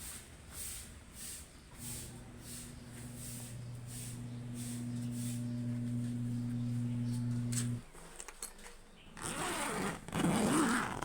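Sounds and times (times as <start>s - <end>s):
low electrical hum: 1.7s - 8.1s.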